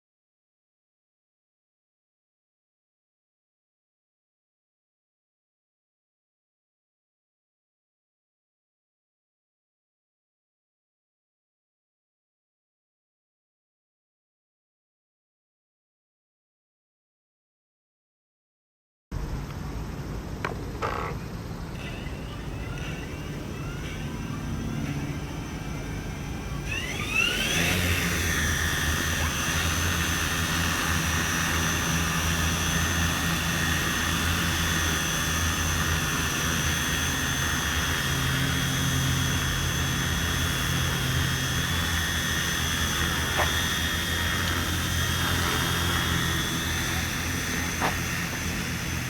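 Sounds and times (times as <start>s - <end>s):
drone motors and propellers whining: 19.2s - 49.0s.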